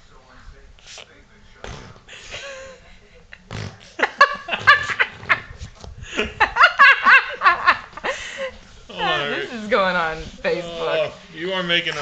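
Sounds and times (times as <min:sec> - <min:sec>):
child blowing a raspberry: 0:03.5 - 0:03.8.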